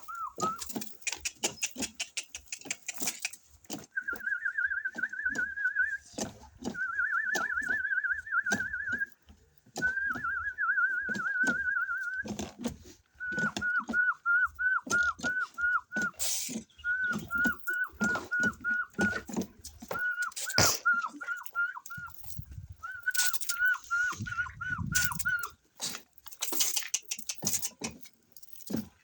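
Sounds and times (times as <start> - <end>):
person whistling trilled notes: 0.0 - 0.8, 3.9 - 9.2, 9.8 - 12.3, 13.1 - 25.6
sharp clicks and knocks: 0.4 - 3.9, 16.5 - 29.0.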